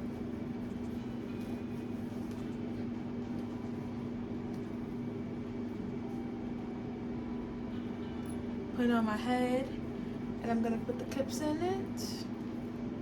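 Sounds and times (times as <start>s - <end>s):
mechanical hum: 0.0s - 13.0s.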